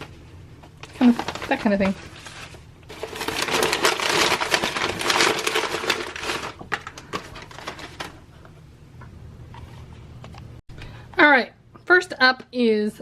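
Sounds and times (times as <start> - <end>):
box packaging crinkling: 0.8 - 8.3.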